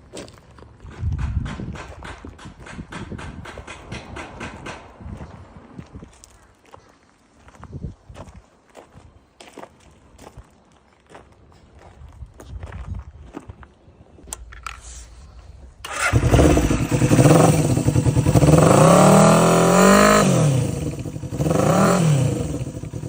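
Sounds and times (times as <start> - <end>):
motorcycle engine revving: 15.8 - 23.0.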